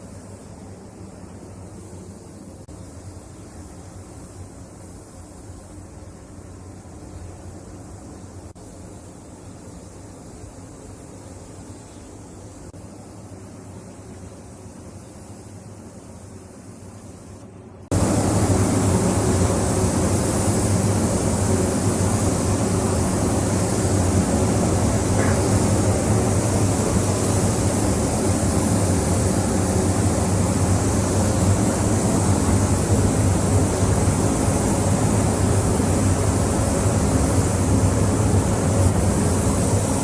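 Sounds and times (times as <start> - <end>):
loud machine humming: 17.9 - 40.0.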